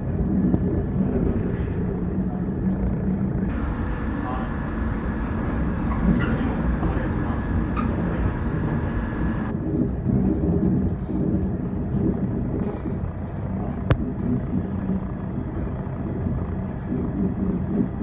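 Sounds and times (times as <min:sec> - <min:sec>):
electric train rumbling: 0:03.5 - 0:09.5
high hiss: 0:03.5 - 0:09.5.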